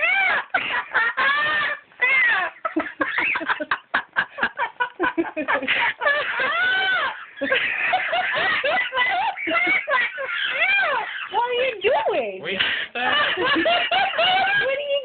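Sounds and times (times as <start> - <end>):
parrot imitating laughter: 0.0 - 3.4.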